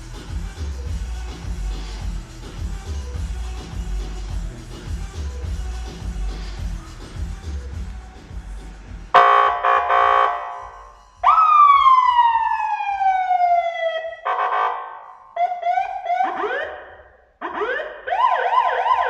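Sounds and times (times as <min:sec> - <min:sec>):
horn-like siren blast: 0:09.2 - 0:19.0
siren wail falling in pitch: 0:09.2 - 0:19.0
warbling siren yelp: 0:09.2 - 0:19.0.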